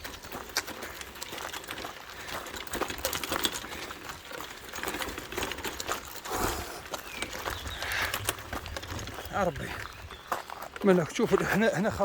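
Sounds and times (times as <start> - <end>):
footsteps on forest path: 0.0 - 12.0.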